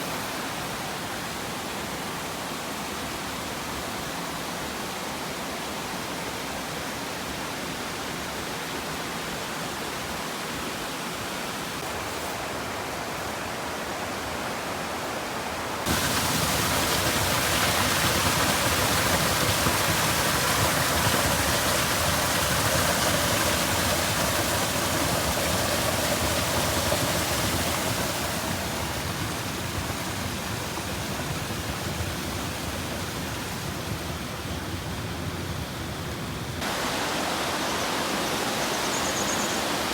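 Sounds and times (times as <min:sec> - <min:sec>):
rushing water roar: 0:00.0 - 0:39.9.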